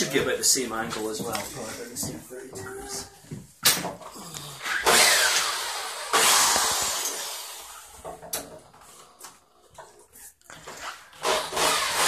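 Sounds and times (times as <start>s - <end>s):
cordless drill running: 4.6s - 8.0s, 11.1s - 12.0s.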